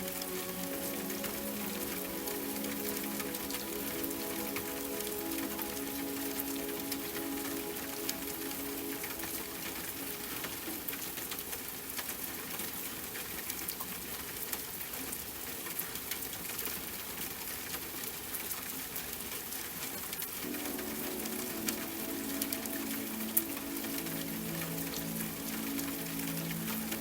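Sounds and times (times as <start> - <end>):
soft music pad: 0.0 - 11.4, 20.4 - 27.0
steady rain pattering: 0.0 - 27.0.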